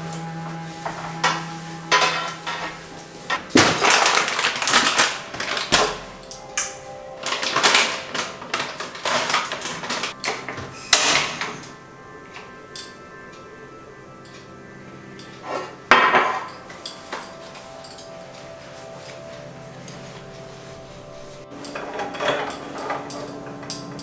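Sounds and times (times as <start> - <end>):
soft background music: 0.0 - 24.0
household items knocking and clattering: 0.9 - 11.8, 15.6 - 17.5.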